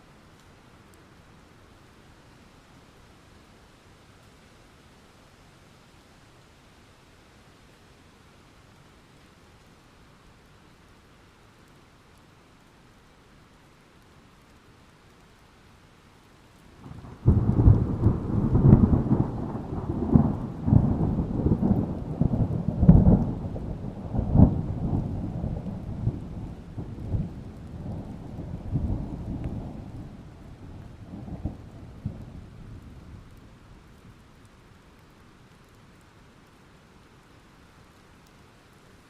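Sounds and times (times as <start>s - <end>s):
light rain falling: 0.0s - 39.0s
thunder rumbling and cracking: 16.8s - 33.4s.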